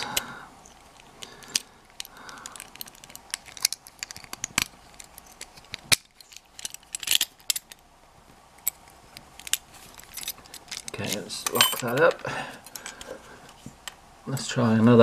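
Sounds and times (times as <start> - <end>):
metal lock-picking tools clicking: 0.7 - 7.8, 8.6 - 12.1.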